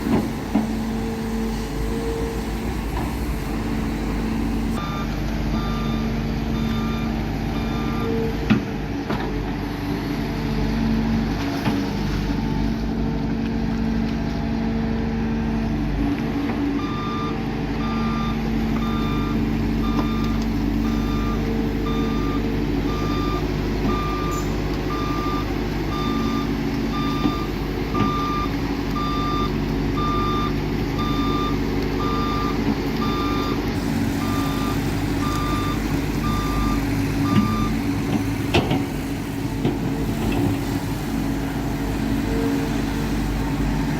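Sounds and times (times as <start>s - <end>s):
diesel vehicle engine running: 0.0s - 43.9s
reversing alarm beeping: 0.2s - 8.2s, 16.8s - 38.4s.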